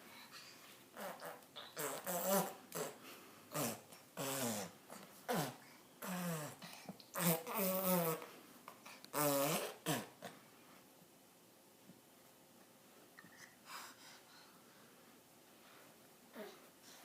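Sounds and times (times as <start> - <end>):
baby grunting and squealing: 1.0 - 8.3.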